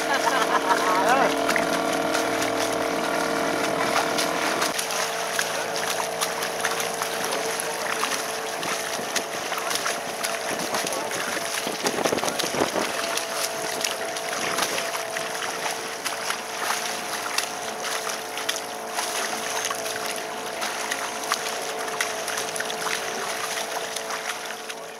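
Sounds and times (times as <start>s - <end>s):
boat motor humming: 0.0s - 24.9s
water splashing along hull: 0.0s - 24.9s
wind on microphone: 10.4s - 13.8s.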